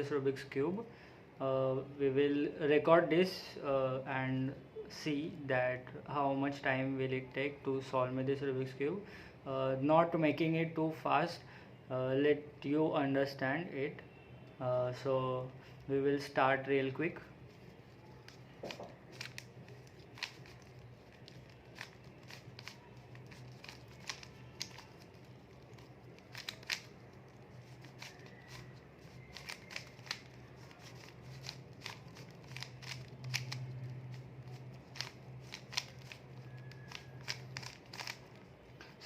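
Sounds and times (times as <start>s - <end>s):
puzzle cube layers clicking: 21.5s - 25.0s, 25.7s - 27.0s, 27.6s - 38.3s.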